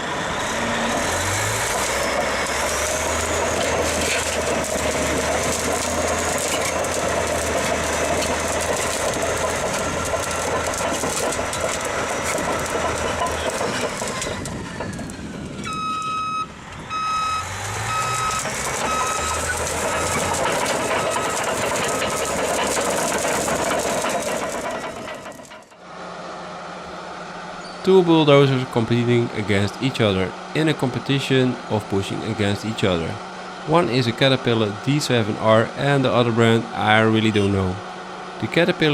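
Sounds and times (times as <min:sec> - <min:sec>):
bulldozer diesel engine: 0:00.0 - 0:38.9
reversing alarm beeping: 0:15.6 - 0:22.1.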